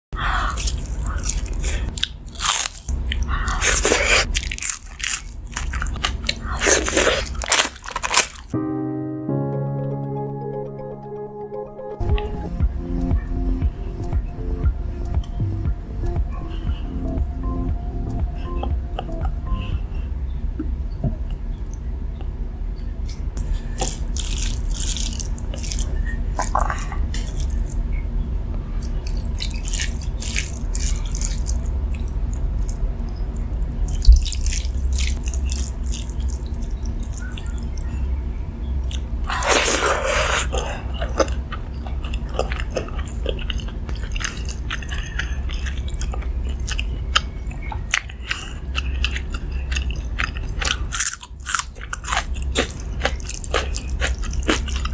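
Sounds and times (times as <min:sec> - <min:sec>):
person crunching and chewing food: 0:00.2 - 0:08.6, 0:23.1 - 0:27.9, 0:28.8 - 0:38.1, 0:38.8 - 0:54.9.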